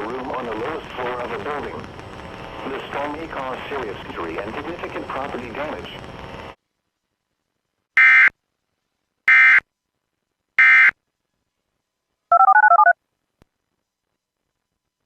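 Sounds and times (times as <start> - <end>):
digital data tone bursts: 12.3 - 13.0.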